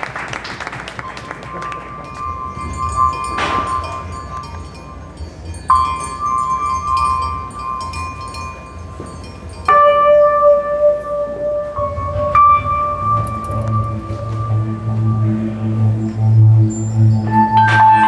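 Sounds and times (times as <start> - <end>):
metal chime ringing: 1.5 - 10.4.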